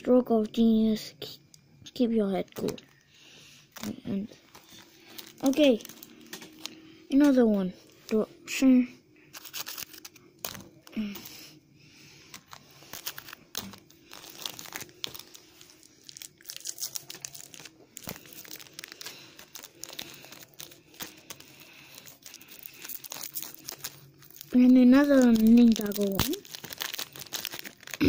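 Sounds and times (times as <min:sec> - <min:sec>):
card pack wrapper tearing: 0:03.8 - 0:07.4, 0:09.3 - 0:11.3, 0:12.3 - 0:28.0.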